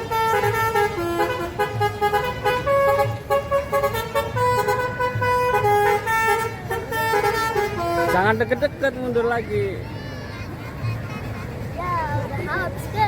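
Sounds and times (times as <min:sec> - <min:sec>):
bus horn playing a tune: 0:00.0 - 0:08.6.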